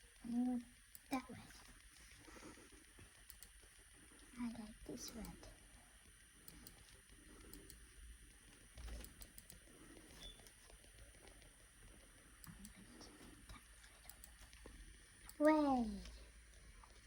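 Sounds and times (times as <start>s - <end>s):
faint computer mouse clicks: 0.9s - 4.3s, 5.0s - 5.5s, 6.4s - 7.9s, 8.5s - 16.2s.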